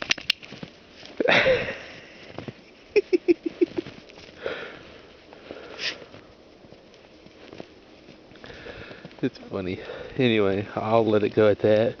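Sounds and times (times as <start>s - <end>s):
dog sniffing and snuffling: 3.5s - 8.4s.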